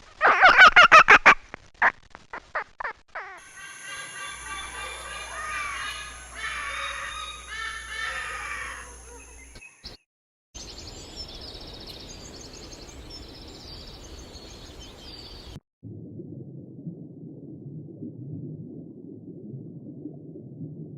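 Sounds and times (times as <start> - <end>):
small birds chirping: 3.3 - 10.0, 10.6 - 15.6
steady outdoor noise: 3.4 - 9.6.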